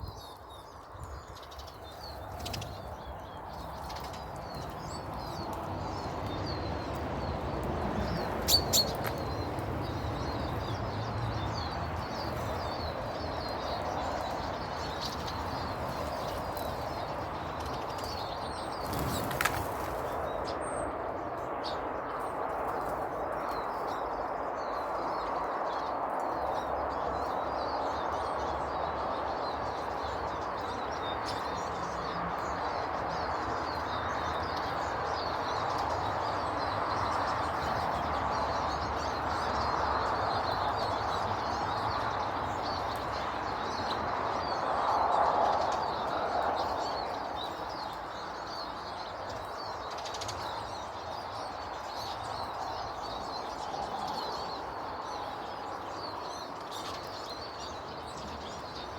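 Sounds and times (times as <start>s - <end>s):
small birds chirping: 0.0s - 58.9s.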